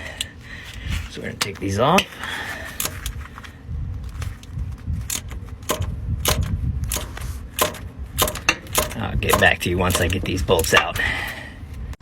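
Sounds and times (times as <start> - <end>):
hand tool clicking on bolts: 2.8 - 3.1, 5.1 - 11.0.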